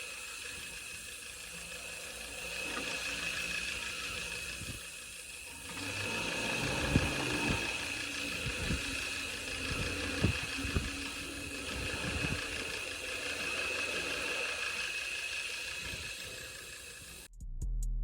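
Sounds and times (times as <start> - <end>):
machine whining and rumbling: 0.0 - 17.3.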